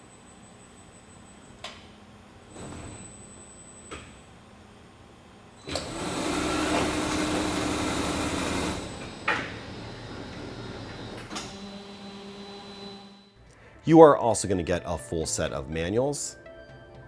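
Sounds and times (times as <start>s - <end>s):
clamp machine hissing and humming: 5.6s - 13.4s.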